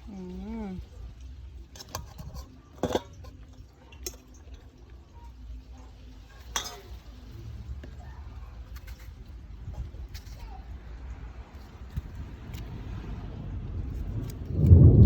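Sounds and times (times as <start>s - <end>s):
utensils clinking against a pot: 0.2s - 10.8s
steady low rumble: 11.0s - 15.0s.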